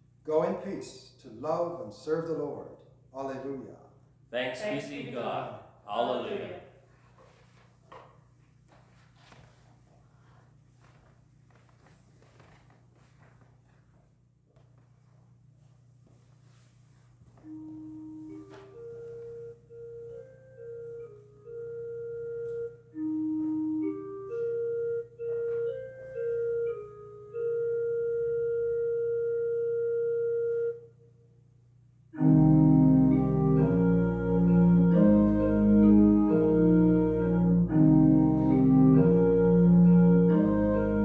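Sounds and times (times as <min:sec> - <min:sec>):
church organ playing: 0:17.3 - 0:31.2, 0:32.2 - 0:41.0.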